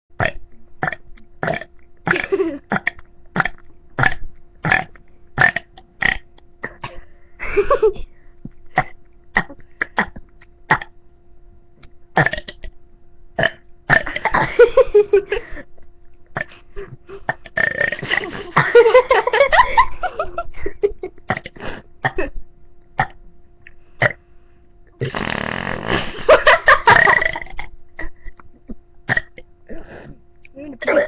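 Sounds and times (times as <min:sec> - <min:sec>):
boy burping: 0:00.2 - 0:06.9, 0:08.8 - 0:10.9, 0:12.2 - 0:12.7, 0:13.4 - 0:14.5, 0:16.4 - 0:16.6, 0:17.3 - 0:18.6, 0:21.3 - 0:22.4, 0:24.0 - 0:24.2, 0:25.0 - 0:25.9, 0:26.9 - 0:28.2, 0:29.1 - 0:29.8, 0:30.8 - 0:31.0.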